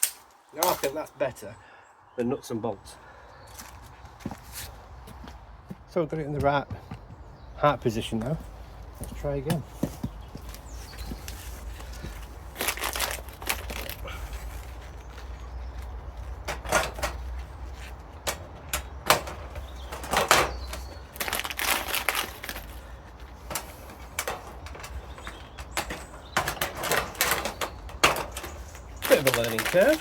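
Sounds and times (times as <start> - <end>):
metallic knocks and clatters: 15.8 - 30.0.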